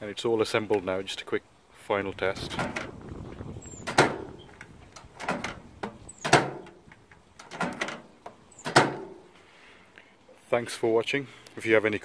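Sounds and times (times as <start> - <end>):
light latch clicks: 3.7 - 9.1
microwave door clacking: 3.8 - 6.8, 8.6 - 9.2.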